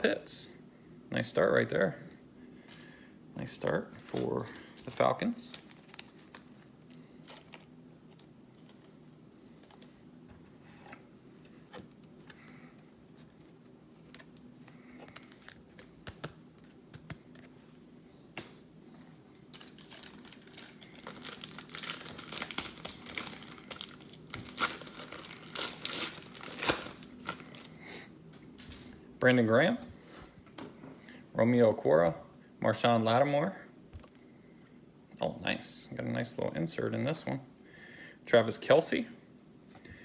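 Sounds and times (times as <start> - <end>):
foil wrapper crinkling and tearing: 4.0 - 8.3, 19.5 - 27.8
cards clicking: 15.1 - 17.5.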